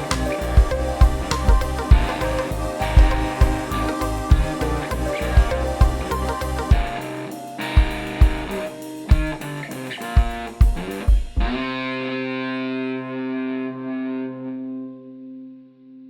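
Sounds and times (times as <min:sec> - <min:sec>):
rock drum beat: 0:00.0 - 0:11.8
distorted electric guitar: 0:00.0 - 0:16.0.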